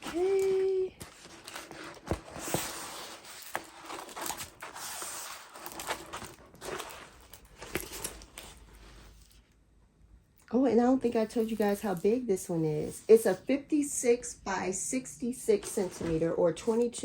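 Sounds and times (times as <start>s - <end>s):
packaging rustling and crinkling: 0.0s - 9.5s, 11.1s - 13.4s.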